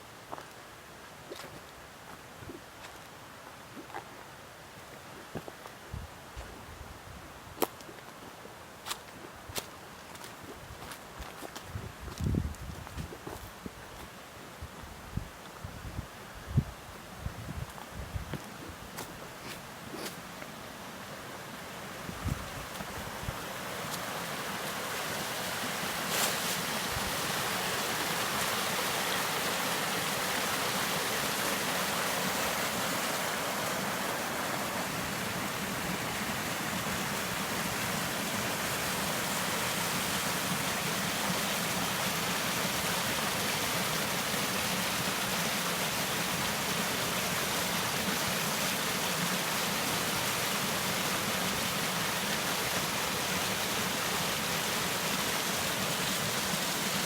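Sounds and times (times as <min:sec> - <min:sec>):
creek water flowing: 0:18.5 - 0:57.0.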